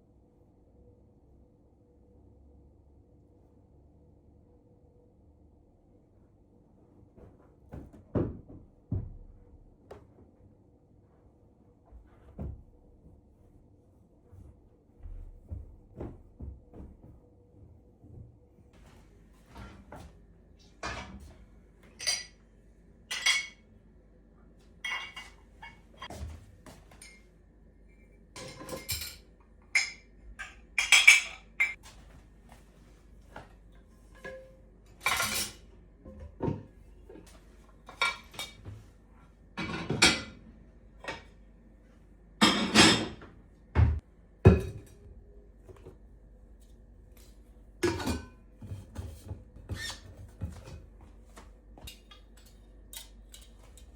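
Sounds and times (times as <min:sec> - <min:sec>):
dishes and utensils clattering: 0:20.8 - 0:21.3, 0:21.9 - 0:22.4, 0:23.1 - 0:23.6, 0:24.8 - 0:26.2, 0:28.4 - 0:31.9, 0:34.0 - 0:38.7, 0:39.6 - 0:40.4, 0:42.4 - 0:45.1, 0:47.8 - 0:50.9, 0:51.8 - 0:53.9.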